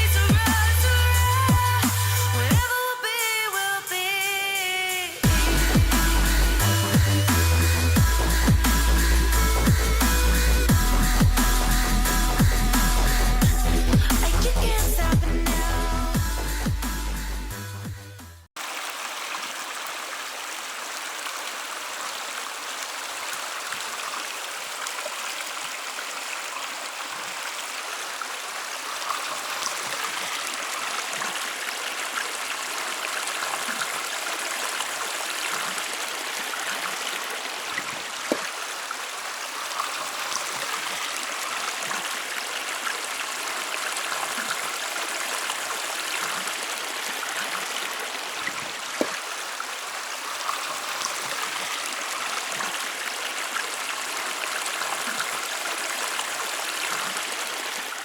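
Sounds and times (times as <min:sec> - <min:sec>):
stream water rushing: 0:18.6 - 0:58.0
water splashes: 0:18.6 - 0:58.0.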